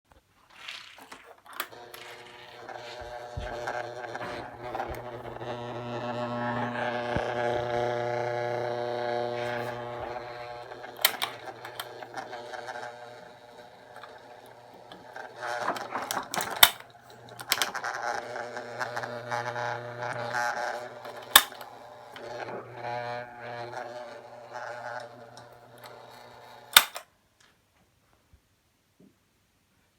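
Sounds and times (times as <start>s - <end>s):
electric fan buzzing: 0.6s - 27.0s
sharp clicks: 1.1s - 27.0s.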